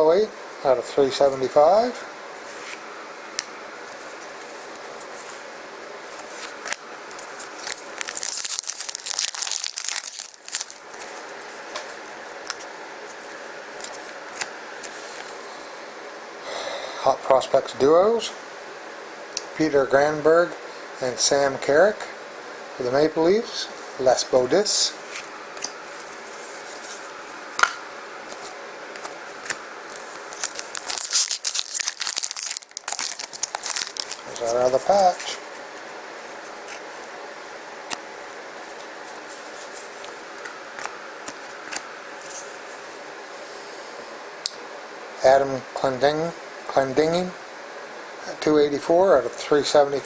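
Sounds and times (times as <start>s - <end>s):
plastic crinkling and rustling: 6.1s - 12.7s, 28.3s - 35.7s.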